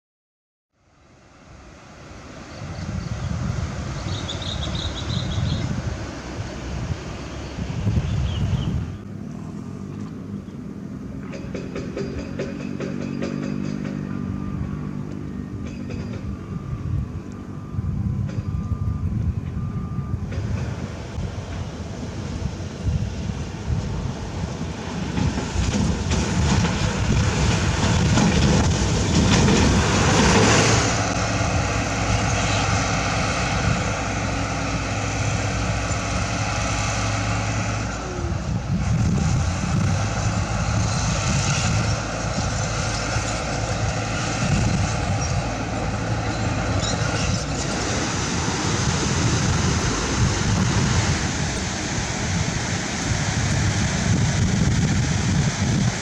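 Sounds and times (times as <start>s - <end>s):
diesel construction machinery running: 0.9s - 56.0s.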